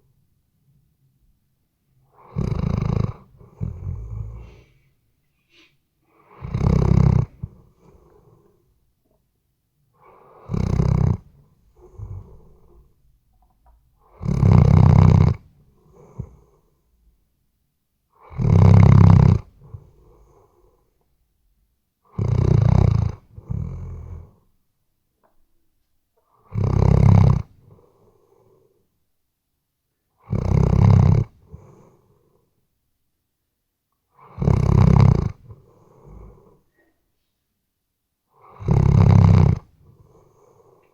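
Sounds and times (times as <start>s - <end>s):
dog snoring: 2.0s - 4.7s, 6.1s - 8.7s, 10.0s - 13.0s, 14.0s - 16.8s, 18.1s - 20.9s, 22.0s - 24.5s, 26.2s - 28.8s, 30.2s - 32.4s, 34.1s - 36.7s, 38.3s - 40.9s.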